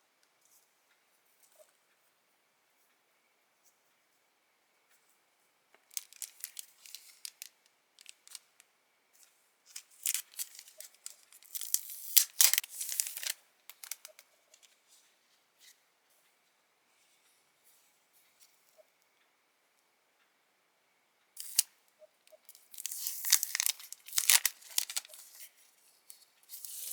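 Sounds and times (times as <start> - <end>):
paper rustling: 6.0 - 8.4, 9.7 - 14.7, 22.5 - 26.9.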